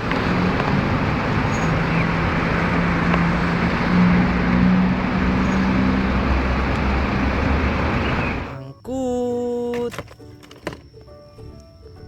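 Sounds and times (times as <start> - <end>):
road noise hiss: 0.0 - 8.6
vehicle engine drone: 0.0 - 8.6.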